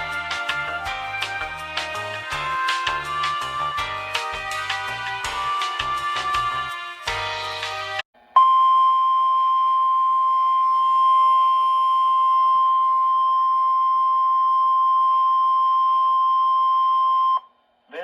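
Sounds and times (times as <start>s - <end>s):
steady warning alarm tone: 8.4s - 17.4s.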